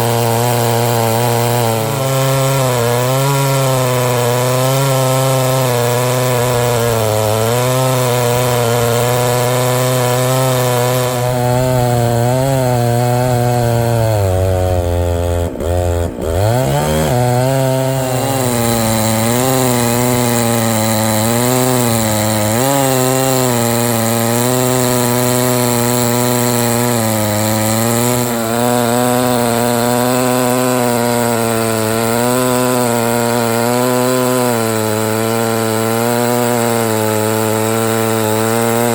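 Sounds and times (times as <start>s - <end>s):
chainsaw cutting log under load: 0.0s - 38.9s.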